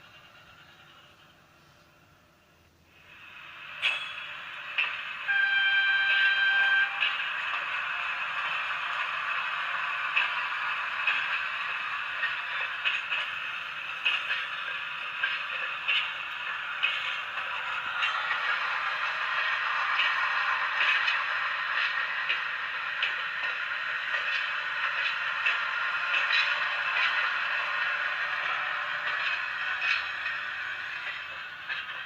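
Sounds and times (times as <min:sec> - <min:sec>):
running train with clacks: 0:00.0 - 0:32.0
train horn blast: 0:05.2 - 0:07.4.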